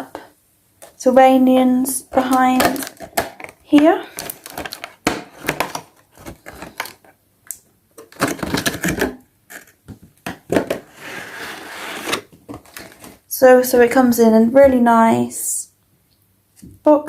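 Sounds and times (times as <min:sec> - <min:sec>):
packaging rustling scrape: 0:02.3 - 0:07.1, 0:08.0 - 0:09.8, 0:10.6 - 0:13.2.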